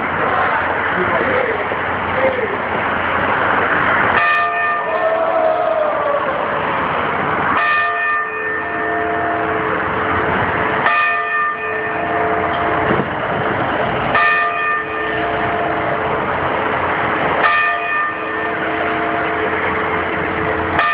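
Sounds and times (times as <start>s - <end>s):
steady background noise: 0.0s - 20.9s
clock tower bell striking: 4.1s - 5.1s, 7.5s - 13.1s, 14.1s - 16.4s, 17.4s - 20.9s.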